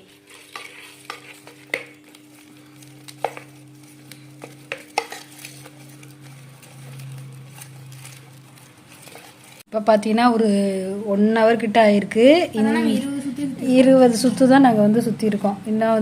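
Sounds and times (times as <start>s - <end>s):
swishing scrape in metal plate: 0.0s - 1.9s
steady low hum: 0.0s - 16.0s.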